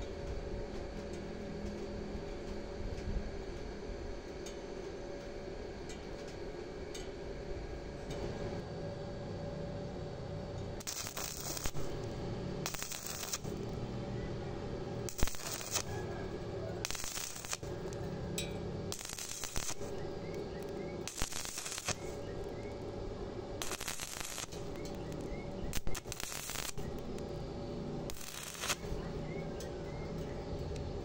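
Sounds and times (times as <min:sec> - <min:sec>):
steady low hum: 0:00.0 - 0:31.0
welding arc crackling and hissing: 0:10.5 - 0:31.0.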